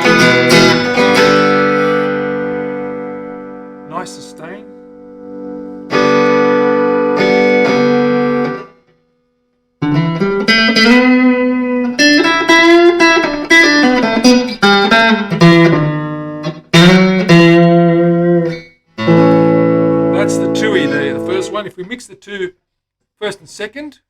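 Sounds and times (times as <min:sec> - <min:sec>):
clean electric guitar: 0:00.0 - 0:09.0, 0:09.8 - 0:21.7.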